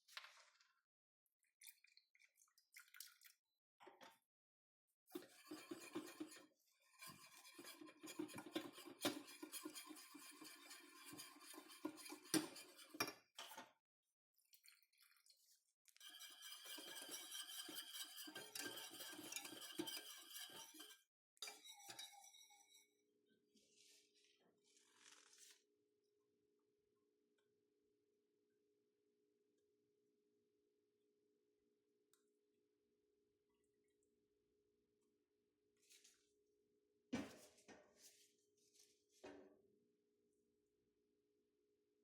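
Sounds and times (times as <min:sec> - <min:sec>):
metal utensil scraping cookware: 0:05.2 - 0:13.6, 0:16.0 - 0:22.8.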